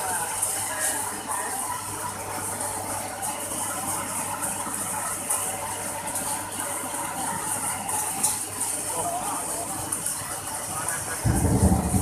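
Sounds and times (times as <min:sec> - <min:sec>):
grain dryer rattling and rushing: 0:07.2 - 0:12.0.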